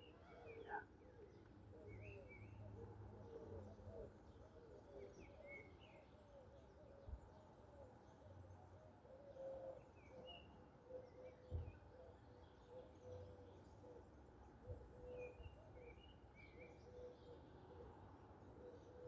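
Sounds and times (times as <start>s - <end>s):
songbirds chirping: 0.0s - 19.0s
dove cooing: 9.0s - 9.9s, 18.6s - 19.0s.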